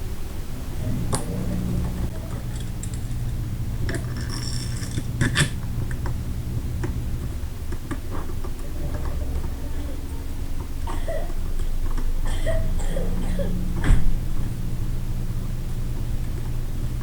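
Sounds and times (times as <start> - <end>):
steady low hum: 0.0 - 17.0
small metal parts clinking: 4.0 - 5.5.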